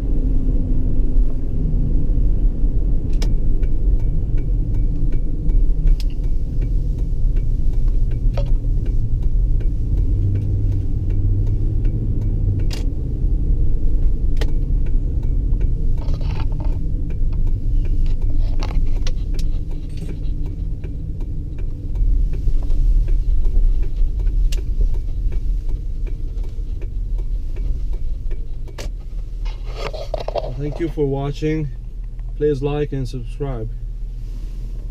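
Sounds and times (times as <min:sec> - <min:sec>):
car engine rumble: 0:00.0 - 0:34.9
road noise: 0:00.0 - 0:34.9
small clicks and rattles: 0:15.6 - 0:31.0.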